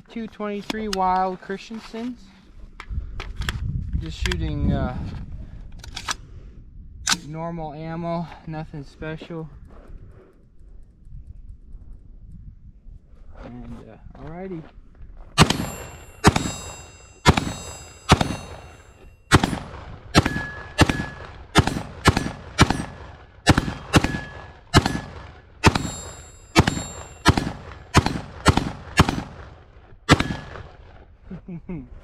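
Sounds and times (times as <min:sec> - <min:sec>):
ringing ping of steel rail: 0:15.4 - 0:21.4, 0:23.8 - 0:27.9
rifle fired rapidly: 0:15.4 - 0:31.0.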